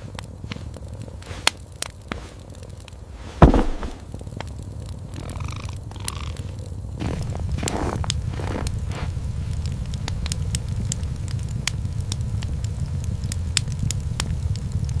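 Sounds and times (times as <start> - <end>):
wood fire crackling: 0.0 - 15.0
steady low rumble: 6.6 - 15.0.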